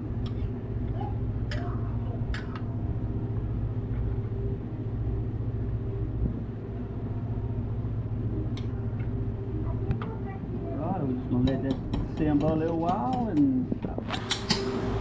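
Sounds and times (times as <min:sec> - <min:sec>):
gas burner rumble and hum: 0:00.0 - 0:15.0.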